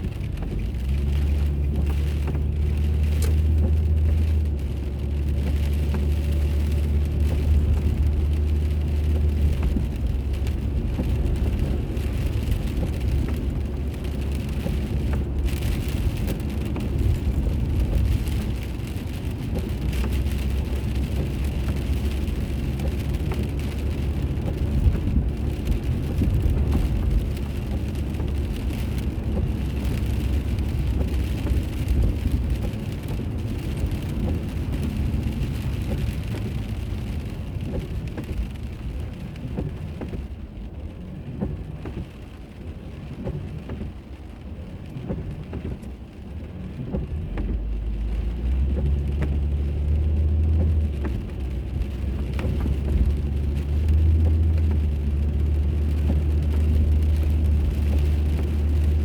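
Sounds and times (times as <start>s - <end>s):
road and tyre noise: 0.0s - 59.0s.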